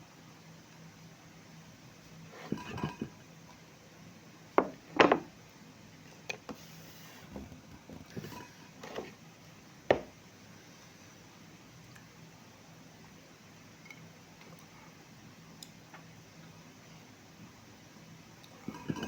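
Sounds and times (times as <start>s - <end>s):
tableware knocking and clattering: 4.6s - 5.3s, 9.9s - 10.2s.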